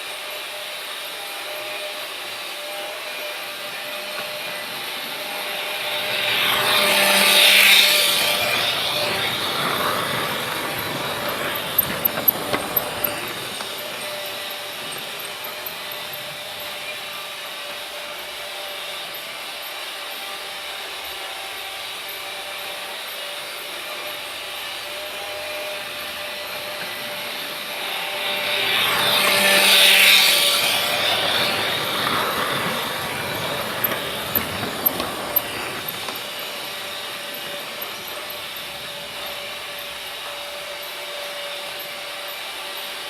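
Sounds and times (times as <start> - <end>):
freight train rattling on rails: 2.7 - 43.0.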